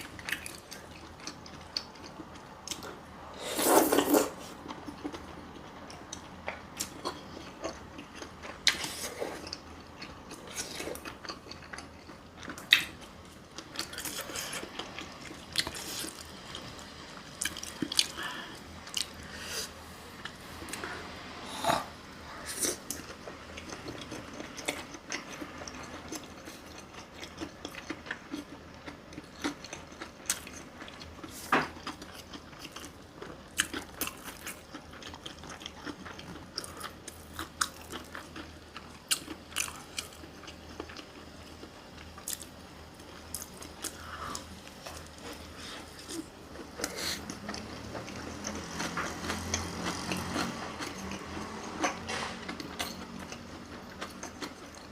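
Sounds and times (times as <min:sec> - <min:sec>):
person chewing and biting: 0:22.6 - 0:54.9.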